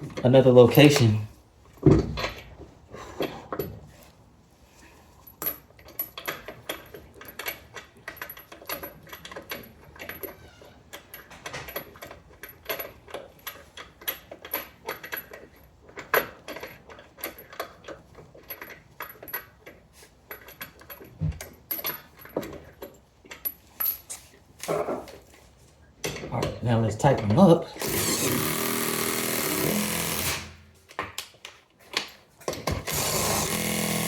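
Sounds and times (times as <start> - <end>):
metallic clinks of lug nuts and tools: 5.0 - 27.9.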